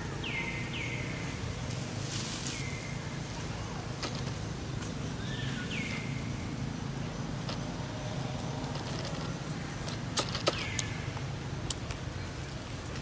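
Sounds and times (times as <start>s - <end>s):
sharp clicks: 9.8s - 12.0s.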